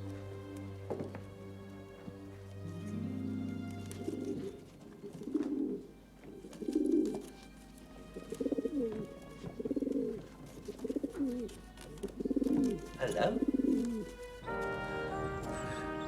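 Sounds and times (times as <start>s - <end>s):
pigeons cooing: 3.8s - 7.3s, 8.2s - 16.0s.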